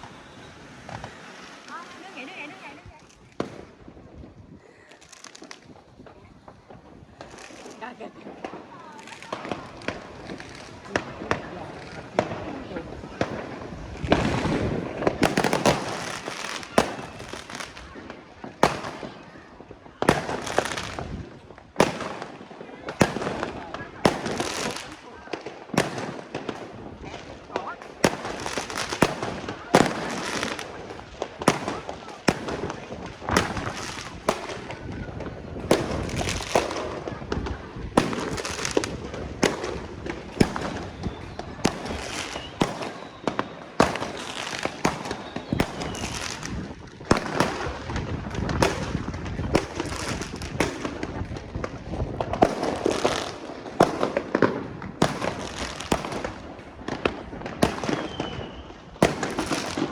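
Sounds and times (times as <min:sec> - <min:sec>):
whistle of firework shell: 0:00.0 - 0:01.6, 0:40.5 - 0:46.5, 0:57.8 - 0:58.9
fireworks bangs: 0:00.0 - 0:59.9
fireworks crackle: 0:00.0 - 0:59.9.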